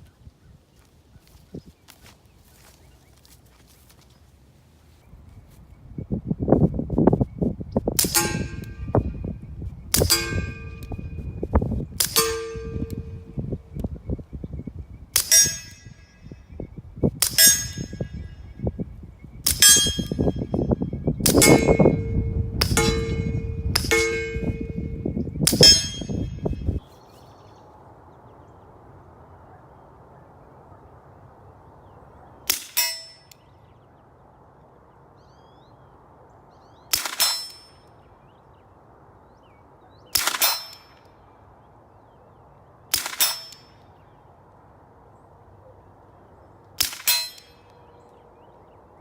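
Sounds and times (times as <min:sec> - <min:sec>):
metallic clang of steel target: 0:08.0 - 0:13.6, 0:15.2 - 0:16.4, 0:17.2 - 0:18.4, 0:19.5 - 0:26.8, 0:32.5 - 0:33.4, 0:36.9 - 0:37.8, 0:40.2 - 0:41.1, 0:42.9 - 0:43.8, 0:46.8 - 0:47.7
suppressed pistol shots: 0:36.9 - 0:37.6, 0:40.1 - 0:40.9, 0:42.9 - 0:43.6, 0:46.8 - 0:47.4.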